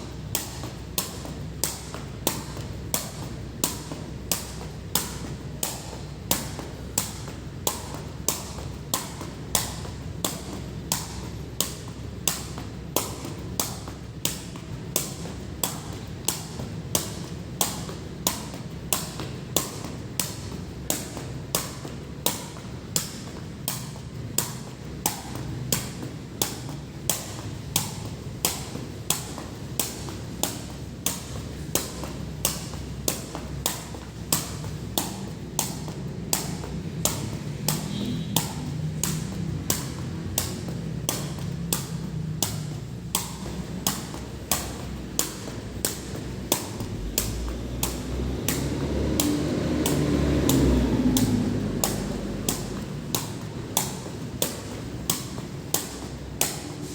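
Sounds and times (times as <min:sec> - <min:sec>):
low rumble of rain: 0:34.2 - 0:55.7.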